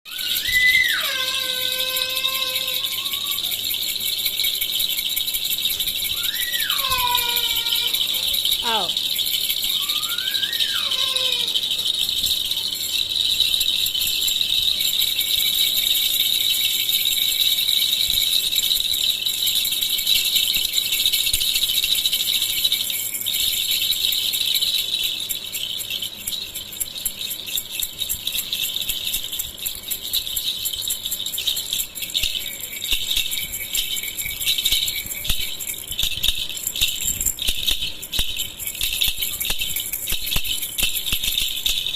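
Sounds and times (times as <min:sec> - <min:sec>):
baby rattle jingling: 0:00.0 - 0:41.9.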